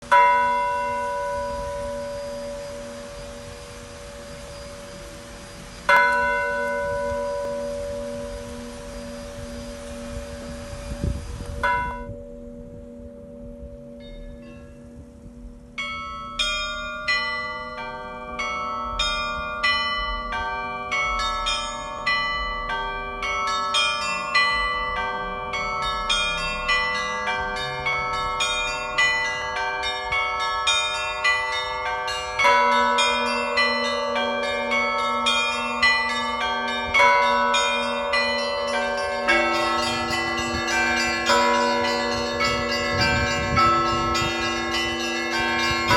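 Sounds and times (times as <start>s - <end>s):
deeper bells ringing: 0.0s - 5.0s, 5.9s - 45.9s
church bells ringing: 0.0s - 45.9s
hum of large bell: 0.1s - 5.0s, 5.9s - 45.9s
small bells striking quickly: 39.2s - 45.9s.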